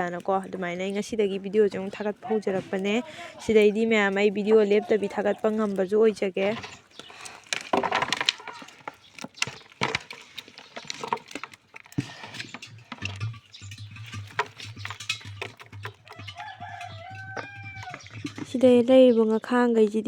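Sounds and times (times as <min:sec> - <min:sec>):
sharp clicks and knocks: 0:05.1 - 0:18.8.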